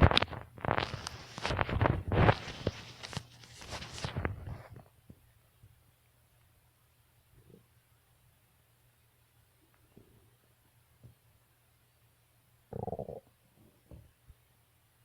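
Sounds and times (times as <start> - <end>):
stomach gurgling: 12.7 - 13.3.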